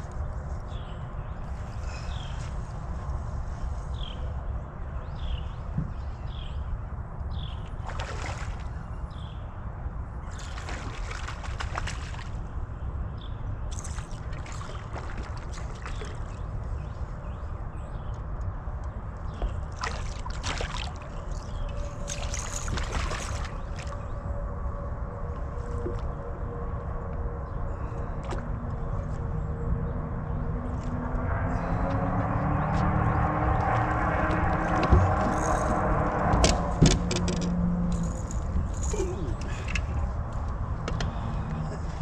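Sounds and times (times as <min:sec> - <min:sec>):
water sloshing around a boat: 0:07.5 - 0:09.1, 0:10.2 - 0:12.6, 0:13.7 - 0:17.6, 0:19.2 - 0:24.2, 0:31.9 - 0:42.0
sharp splashing or clatter: 0:10.4 - 0:12.4, 0:22.1 - 0:23.8.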